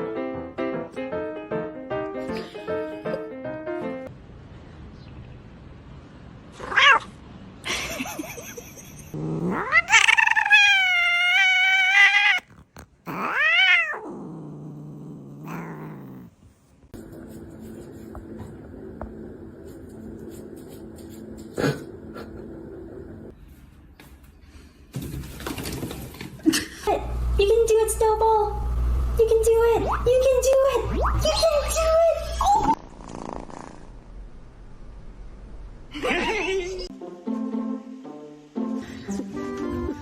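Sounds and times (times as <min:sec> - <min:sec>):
cat meowing: 0:06.6 - 0:07.1, 0:09.4 - 0:14.1
cat wavering yowl: 0:09.4 - 0:12.5, 0:13.1 - 0:14.1.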